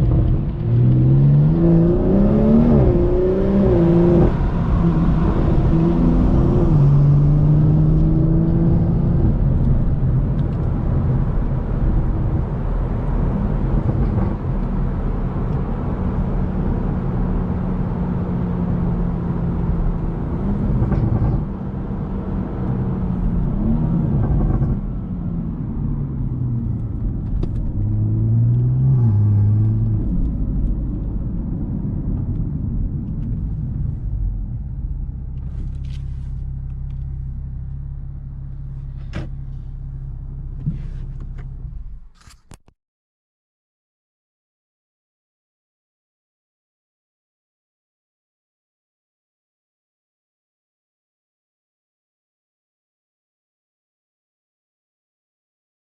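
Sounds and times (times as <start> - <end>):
car engine running while driving: 0.0 - 42.4
low road rumble: 0.0 - 42.7.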